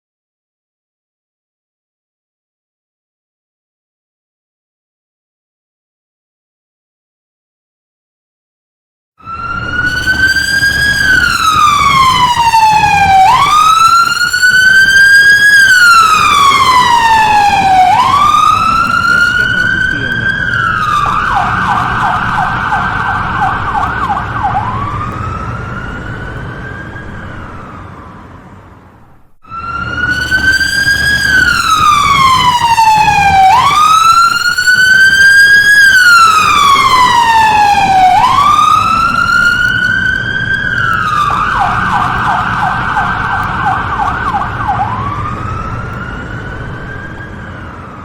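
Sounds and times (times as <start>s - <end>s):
electronic siren yelping and wailing: 9.2s - 28.2s, 29.4s - 48.0s.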